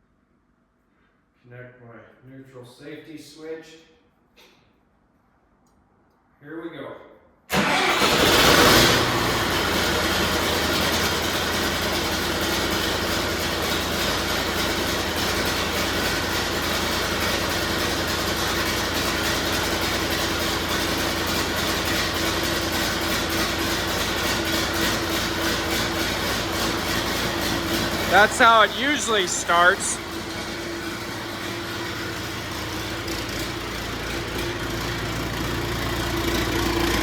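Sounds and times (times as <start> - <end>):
diesel engine starting and idling: 7.5 - 37.0.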